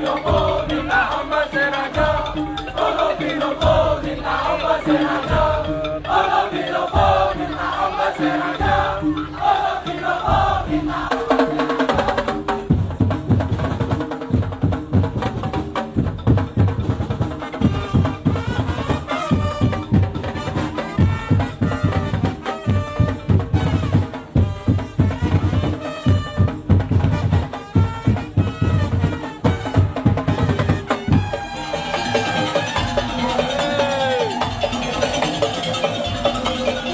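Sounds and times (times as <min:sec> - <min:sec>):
drums and percussion: 0:00.0 - 0:36.9
pitched instrument tones: 0:30.4 - 0:36.9.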